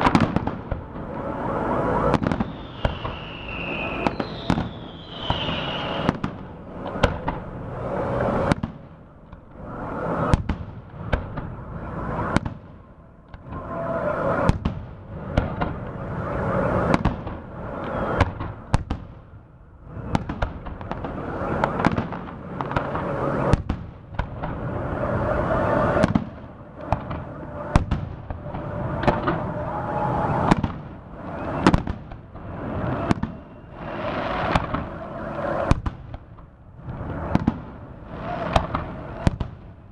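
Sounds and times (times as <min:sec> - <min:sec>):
firework crackle and rumble: 0:00.0 - 0:39.9
firework shells bursting: 0:02.1 - 0:06.3.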